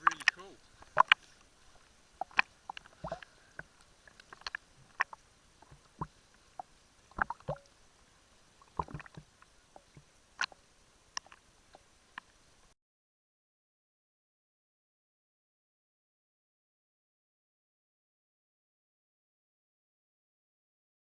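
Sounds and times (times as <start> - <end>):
faint steady hiss: 0.0 - 12.8.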